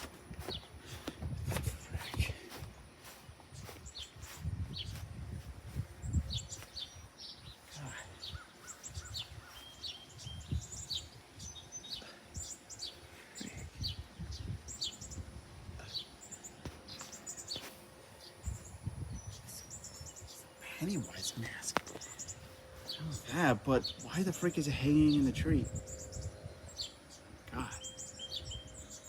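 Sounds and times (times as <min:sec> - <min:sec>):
small birds chirping: 0:00.0 - 0:29.0
low thumps on microphone: 0:00.4 - 0:02.4.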